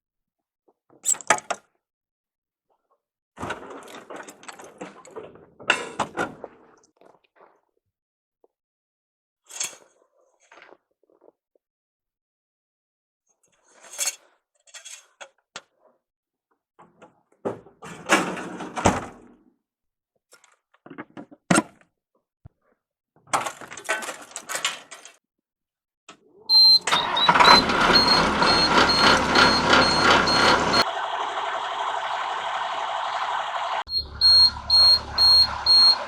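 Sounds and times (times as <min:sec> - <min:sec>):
truck engine running: 0:26.5 - 0:36.0
high repeating warning chime: 0:33.9 - 0:36.0.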